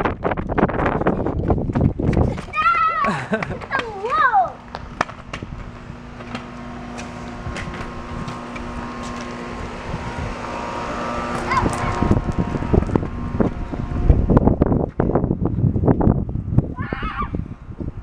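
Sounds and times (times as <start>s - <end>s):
motor hum: 0.8s - 18.0s
rumbling knocks: 3.3s - 15.8s.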